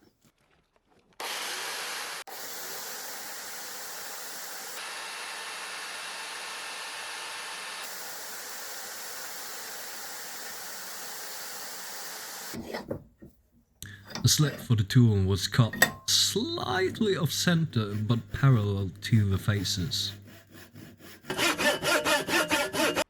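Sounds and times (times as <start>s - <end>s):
power tool cutting wood: 1.2s - 12.8s, 16.4s - 23.0s.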